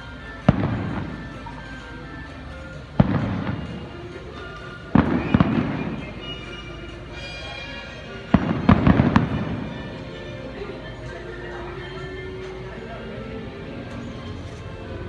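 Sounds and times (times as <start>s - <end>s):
fireworks crackling: 0.0s - 1.9s, 3.0s - 10.8s
background music: 0.0s - 15.0s
fireworks bangs: 0.5s - 1.2s, 3.0s - 3.8s, 4.9s - 6.5s, 8.3s - 9.9s.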